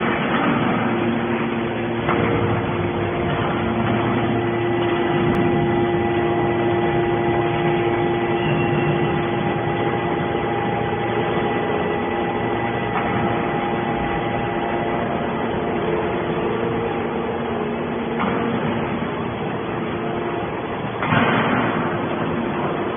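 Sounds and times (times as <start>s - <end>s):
baler machine drone: 0.0s - 22.9s.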